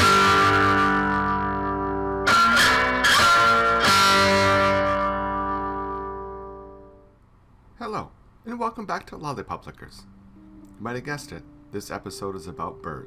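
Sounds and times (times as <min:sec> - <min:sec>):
guitar chords ringing: 0:00.0 - 0:07.1, 0:10.0 - 0:13.0.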